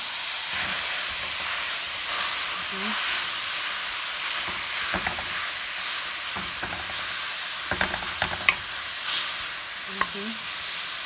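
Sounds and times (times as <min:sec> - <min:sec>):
meat sizzling in a pan: 0:00.0 - 0:11.0
utensil clicking against pan: 0:04.4 - 0:05.6, 0:06.4 - 0:09.3, 0:09.9 - 0:10.3.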